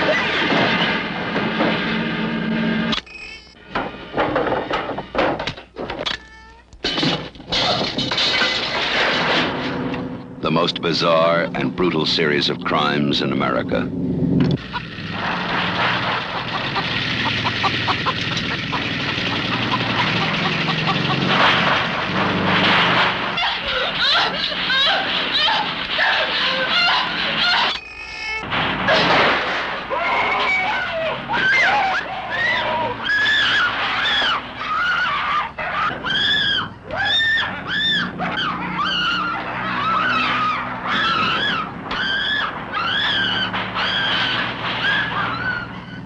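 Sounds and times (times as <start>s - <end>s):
engine running: 0.0s - 3.0s, 8.7s - 27.5s, 36.7s - 46.0s
low steady drone: 9.8s - 14.7s
woman screaming: 23.4s - 27.8s, 29.9s - 43.3s.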